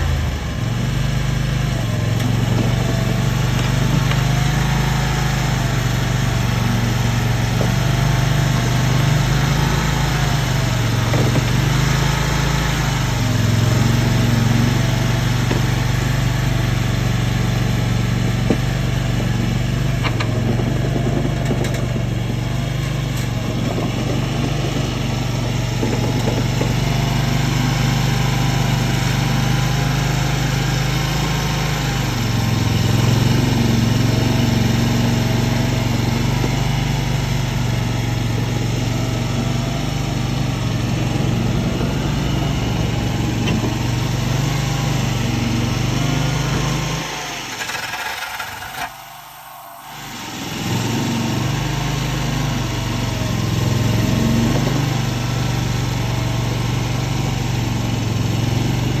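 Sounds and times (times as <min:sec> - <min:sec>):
small tracked machine engine running: 0:00.0 - 0:59.0.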